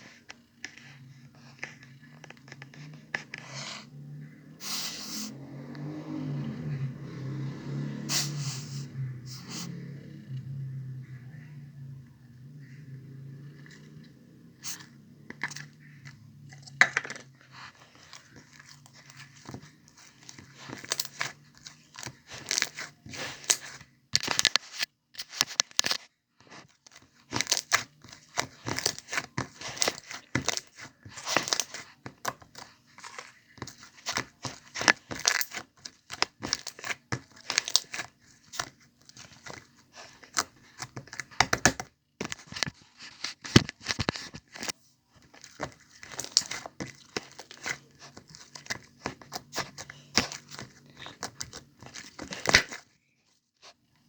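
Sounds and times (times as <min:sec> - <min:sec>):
slime squished with sticky pops: 0:27.2 - 0:42.5.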